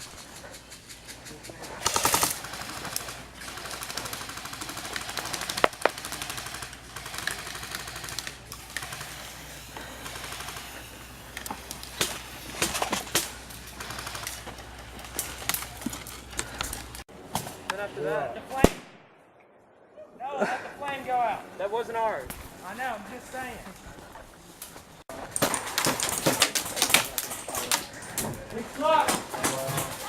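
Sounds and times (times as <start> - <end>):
airsoft guns firing bursts: 1.6 - 15.8
sharp single gun cracks: 18.6 - 19.1.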